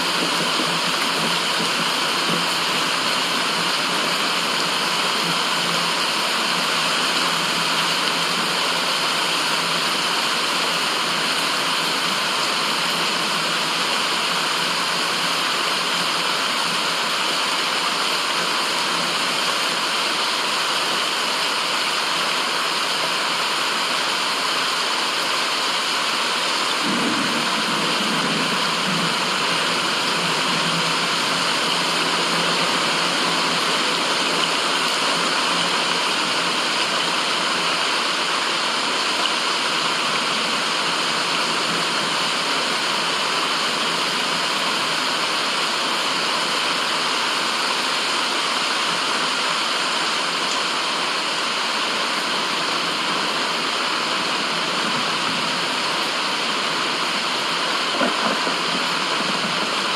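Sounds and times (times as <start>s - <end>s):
steady white noise hiss: 0.0s - 59.9s.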